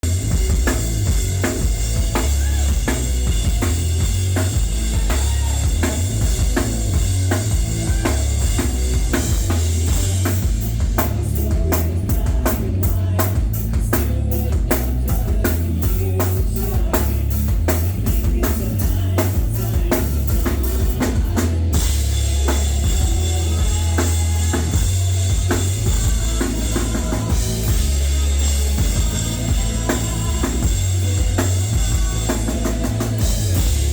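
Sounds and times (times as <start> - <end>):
fast drum hits: 0.0 - 33.9
rock band playing live: 0.0 - 33.9.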